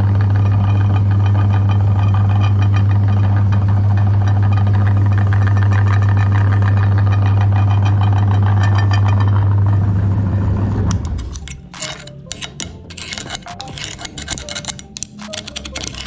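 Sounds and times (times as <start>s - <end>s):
crackling grind: 10.8s - 16.0s.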